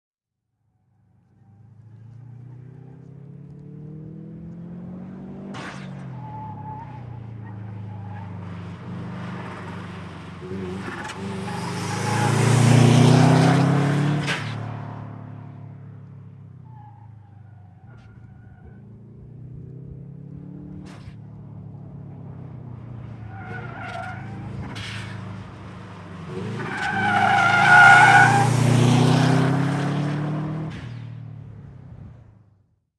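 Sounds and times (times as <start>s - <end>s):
tyres squealing: 26.6s - 28.6s.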